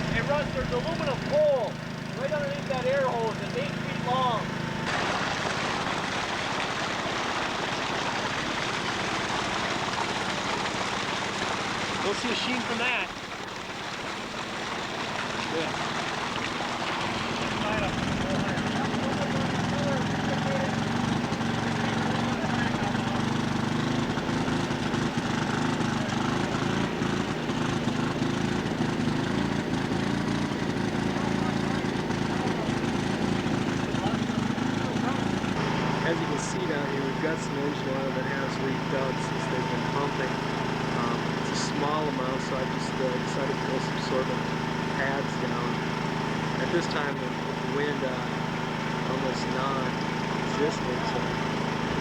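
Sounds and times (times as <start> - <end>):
pumps running: 0.0 - 52.0.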